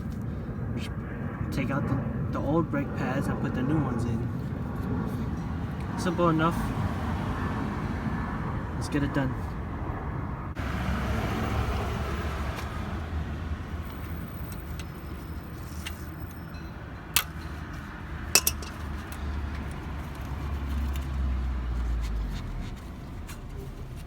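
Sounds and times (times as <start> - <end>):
steady low rumble: 0.0 - 10.6
metal tools clinking: 14.6 - 21.1
ringing metal clicks: 18.4 - 18.8.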